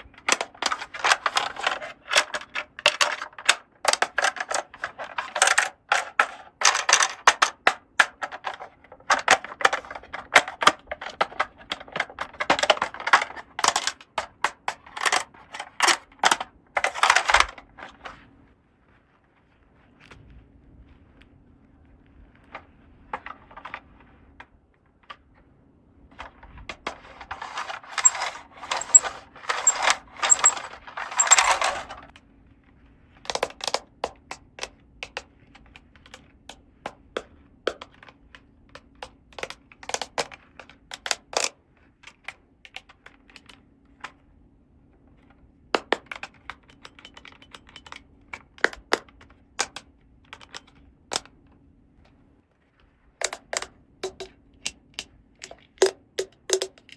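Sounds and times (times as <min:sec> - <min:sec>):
plastic toy pieces clicking: 0:00.0 - 0:18.0, 0:26.7 - 0:32.2, 0:33.2 - 0:43.6, 0:45.8 - 0:51.3, 0:53.2 - 0:56.9
crinkling and clattering: 0:00.0 - 0:56.9.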